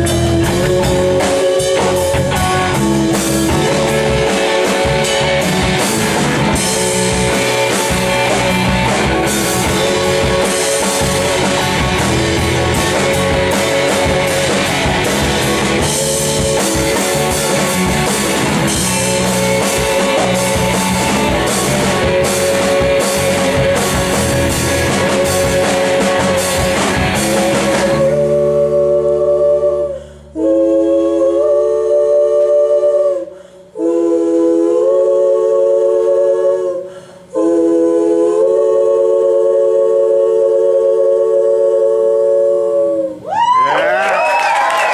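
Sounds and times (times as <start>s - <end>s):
rock band playing: 0.0s - 28.3s
a cappella vocal harmony: 0.0s - 43.8s.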